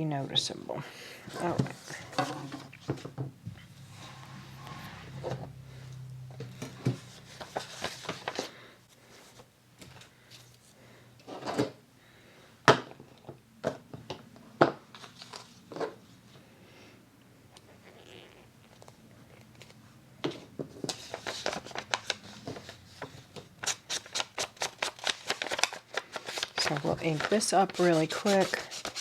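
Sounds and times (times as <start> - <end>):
paper rustling: 6.6 - 10.6, 14.9 - 15.9, 20.7 - 29.0.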